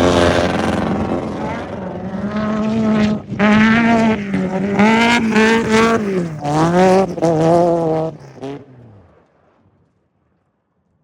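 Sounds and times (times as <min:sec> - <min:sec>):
race vehicle engine revving: 0:00.0 - 0:09.1.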